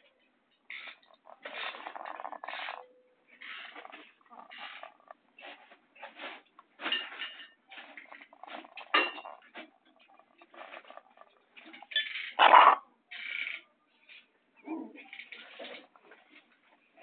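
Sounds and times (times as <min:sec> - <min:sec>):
chicken snoring: 0:00.8 - 0:05.7.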